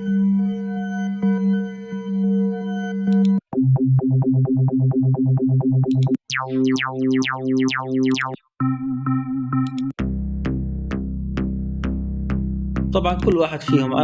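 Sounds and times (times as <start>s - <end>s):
synthesizer tones: 3.1s - 10.0s, 12.8s - 14.0s.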